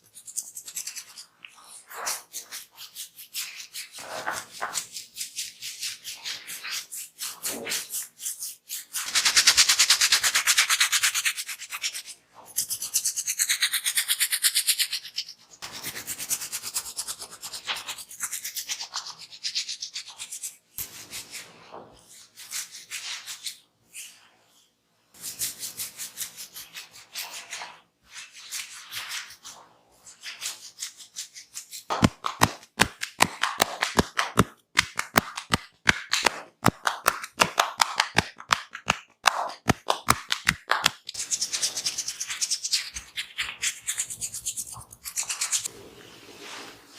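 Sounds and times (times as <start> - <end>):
fingers rubbing through hair: 25.3 - 46.7
sharp rhythmic taps: 31.9 - 41.2.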